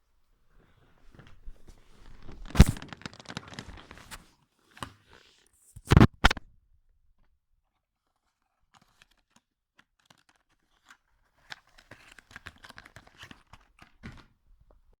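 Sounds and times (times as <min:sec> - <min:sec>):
crackling rustling noise: 0:00.8 - 0:04.4.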